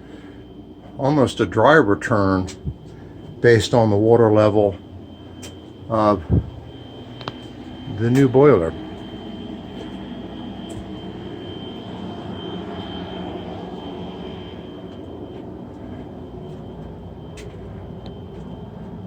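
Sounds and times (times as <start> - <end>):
boiler burner droning: 0.0 - 19.0
high whine: 0.0 - 19.0.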